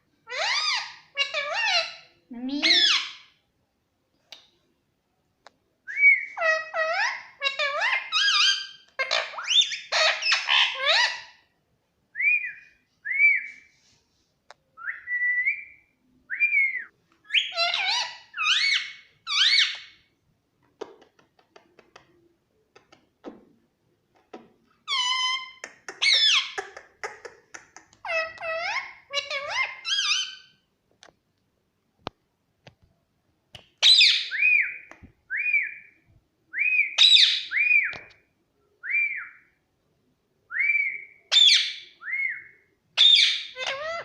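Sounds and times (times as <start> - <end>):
parakeet whistling and chattering: 5.9 - 11.3, 14.8 - 20.0, 24.9 - 30.5, 33.8 - 36.0, 36.6 - 38.0, 40.6 - 44.0.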